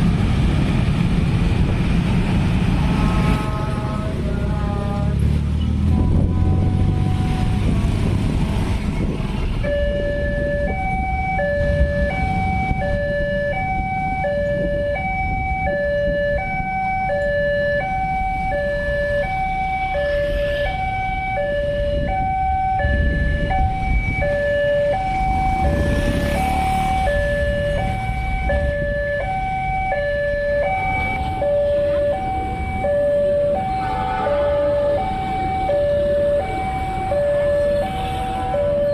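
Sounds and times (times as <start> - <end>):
road traffic rumble: 0.0 - 38.9
two-tone electronic warning chime: 9.6 - 25.8.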